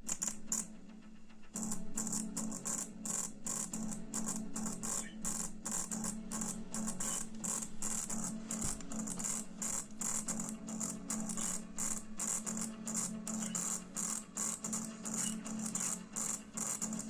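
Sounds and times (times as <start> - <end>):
fast high percussion beat: 3.4 - 17.0.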